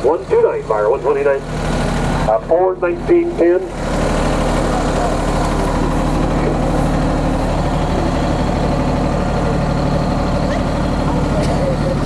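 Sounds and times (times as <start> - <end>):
diesel tractor engine idling: 0.0 - 12.0.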